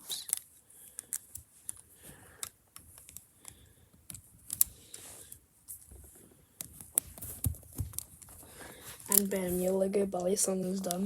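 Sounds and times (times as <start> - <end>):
plastic pieces clicking together: 0.1 - 4.8, 9.0 - 9.4.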